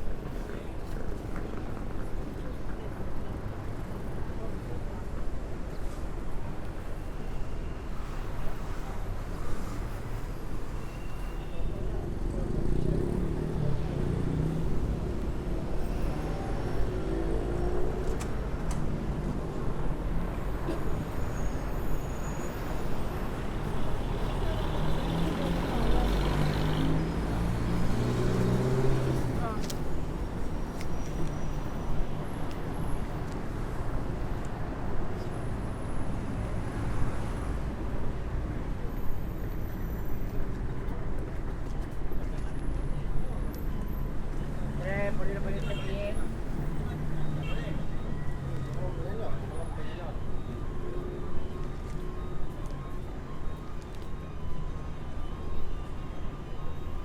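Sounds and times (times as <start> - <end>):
heavy street traffic: 0.0 - 57.0.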